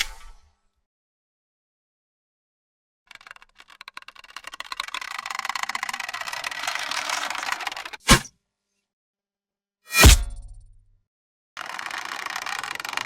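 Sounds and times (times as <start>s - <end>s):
bow creaking clicks: 3.1s - 8.0s, 11.6s - 13.0s.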